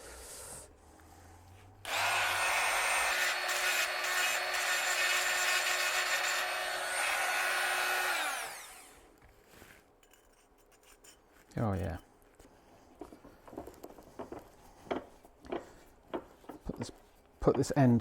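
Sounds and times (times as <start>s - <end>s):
rotary tool whining: 1.9s - 9.0s.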